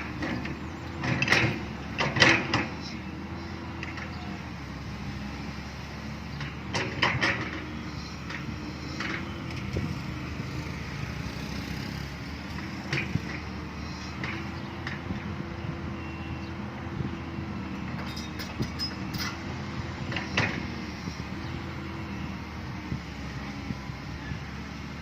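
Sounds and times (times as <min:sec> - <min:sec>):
diesel excavator engine: 0:00.0 - 0:25.0.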